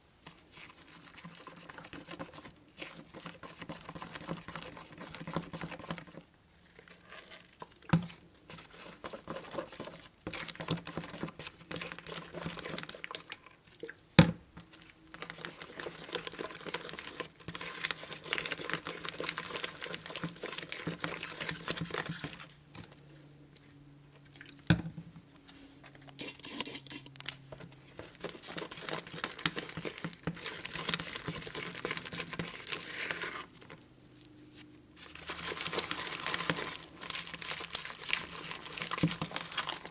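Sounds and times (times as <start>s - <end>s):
slime crackling and squelching: 14.8s - 22.9s, 27.9s - 39.9s.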